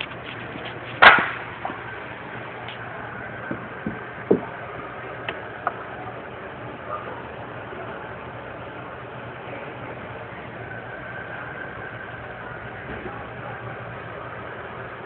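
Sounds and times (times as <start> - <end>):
steady low hum: 0.0 - 15.0
sharp crack: 0.1 - 1.6.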